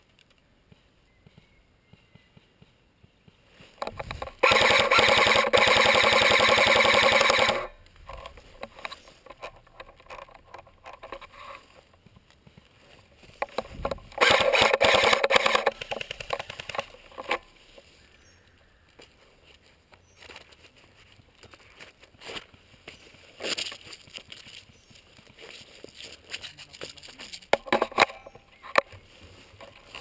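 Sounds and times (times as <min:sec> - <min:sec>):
airsoft gun firing full auto: 0:03.9 - 0:07.8, 0:14.1 - 0:16.9.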